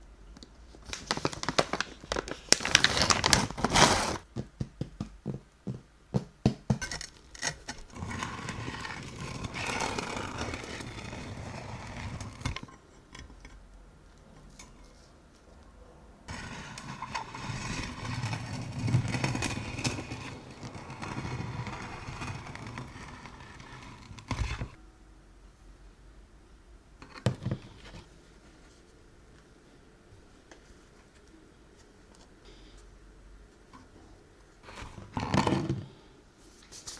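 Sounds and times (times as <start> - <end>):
knocks: 4.3 - 7.0.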